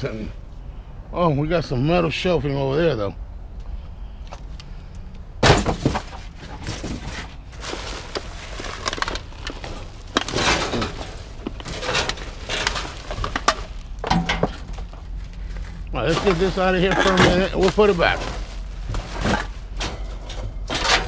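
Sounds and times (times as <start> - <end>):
junk clattering and scraping: 4.3 - 21.0.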